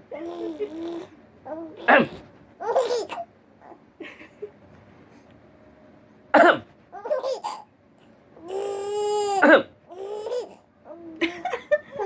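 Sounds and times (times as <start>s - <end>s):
baby laughing and babbling: 0.1s - 3.8s, 6.9s - 7.7s, 8.4s - 12.0s
sharp coughs: 6.4s - 6.7s.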